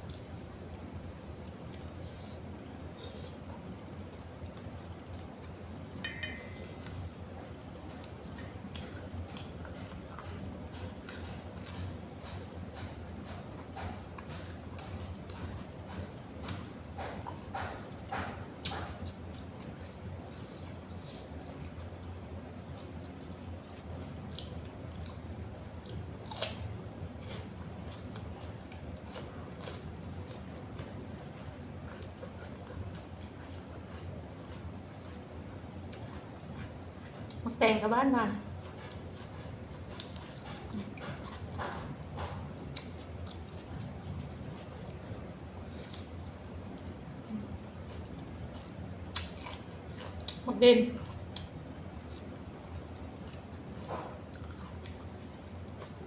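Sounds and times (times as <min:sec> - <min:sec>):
person chewing: 0:00.0 - 0:37.4, 0:38.5 - 0:56.0
low steady hum: 0:00.0 - 0:56.0
low hum: 0:03.0 - 0:08.3.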